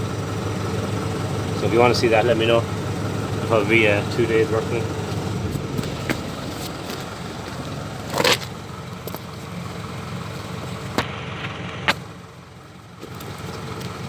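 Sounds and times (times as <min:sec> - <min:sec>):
loud clatter: 0:00.0 - 0:09.3
diesel engine idling: 0:00.0 - 0:14.0.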